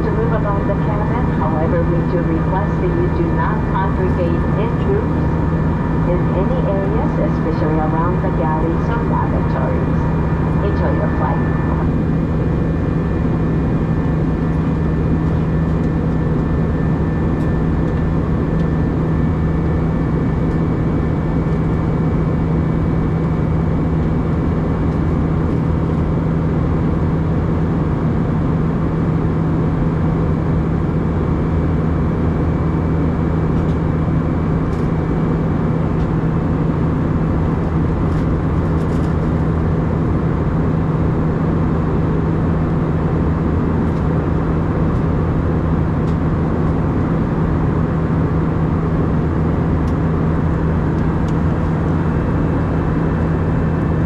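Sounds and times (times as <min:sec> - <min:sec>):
jet engines roaring: 0:00.0 - 0:19.4
faint high whine: 0:00.0 - 0:20.4
constant low hum: 0:00.0 - 0:54.0.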